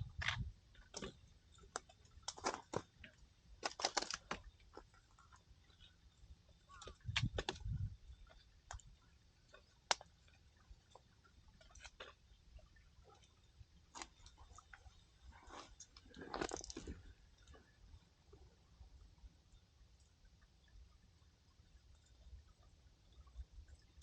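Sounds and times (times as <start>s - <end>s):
firewood crackling and popping: 0.2s - 3.0s, 3.6s - 4.9s.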